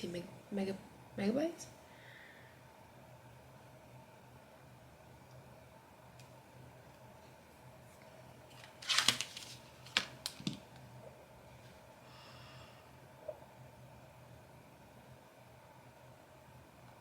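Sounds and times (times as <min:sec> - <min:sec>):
faint room hum: 0:00.0 - 0:17.0.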